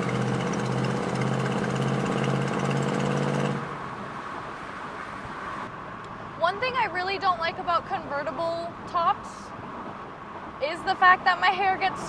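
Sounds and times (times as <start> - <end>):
car engine cruising: 0.0 - 4.7
wind and road noise: 0.0 - 12.0.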